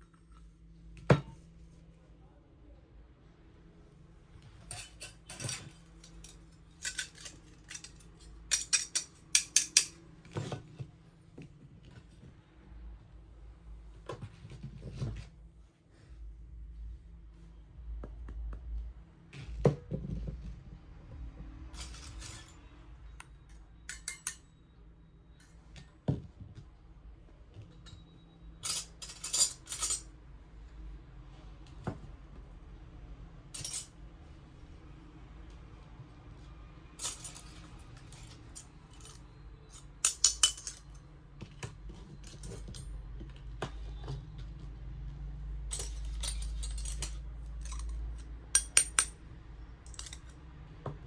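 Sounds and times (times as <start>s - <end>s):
metal kitchen pieces clinking: 4.7s - 10.0s, 21.7s - 22.7s, 23.9s - 24.5s, 27.9s - 30.1s, 33.6s - 33.9s, 37.0s - 41.0s, 45.7s - 49.2s, 49.8s - 50.3s
metallic clattering: 33.6s - 33.9s.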